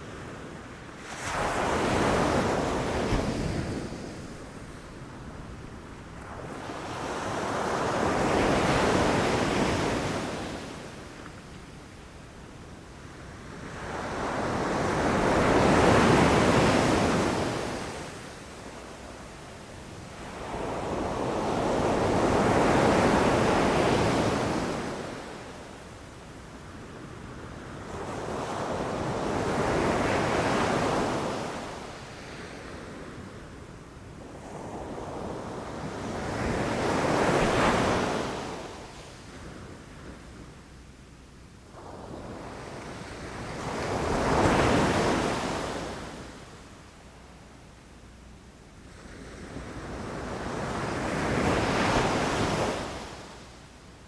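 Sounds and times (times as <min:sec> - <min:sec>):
ocean waves breaking on beach: 0:01.0 - 0:11.2, 0:13.1 - 0:25.8, 0:34.3 - 0:40.5, 0:48.9 - 0:53.7.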